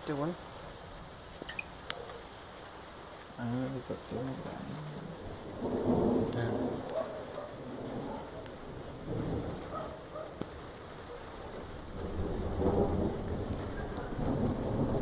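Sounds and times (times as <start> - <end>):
rain: 0.0 - 15.0
thunder rumbling: 3.4 - 15.0.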